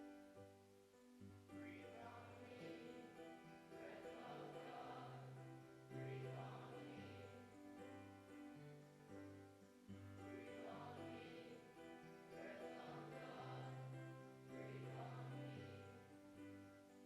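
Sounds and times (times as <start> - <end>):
group singing a hymn: 1.6 - 7.5, 10.2 - 16.2.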